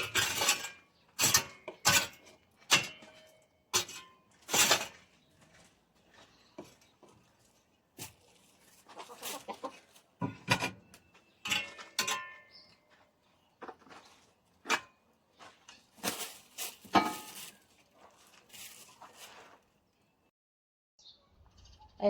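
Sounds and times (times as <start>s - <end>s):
hens clucking: 8.7s - 10.1s
rustles: 15.4s - 19.9s.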